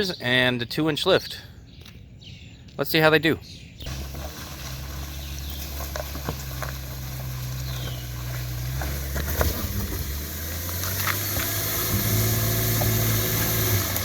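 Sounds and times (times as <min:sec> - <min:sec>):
car engine humming: 0:03.8 - 0:14.0.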